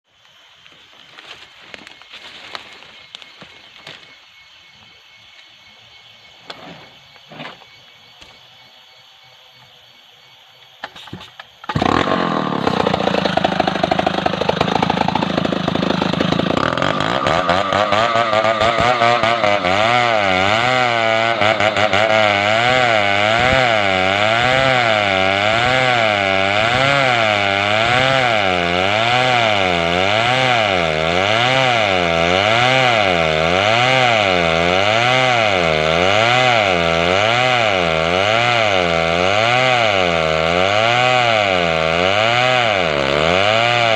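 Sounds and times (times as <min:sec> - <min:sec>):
chainsaw cutting log: 0:10.8 - 0:43.9.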